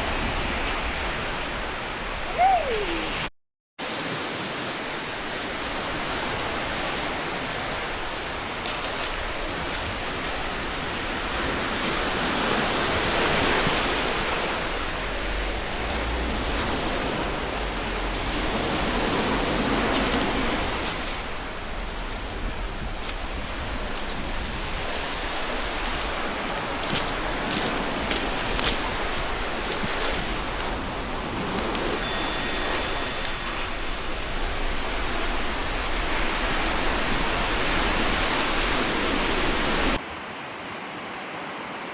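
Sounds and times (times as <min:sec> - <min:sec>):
sea waves washing ashore: 0:00.0 - 0:41.9
short high tone: 0:32.0 - 0:33.9.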